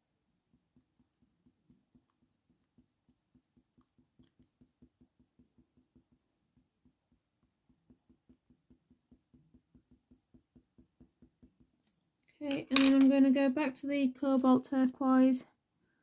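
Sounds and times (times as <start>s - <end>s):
pencil shading on paper: 0.3s - 11.9s.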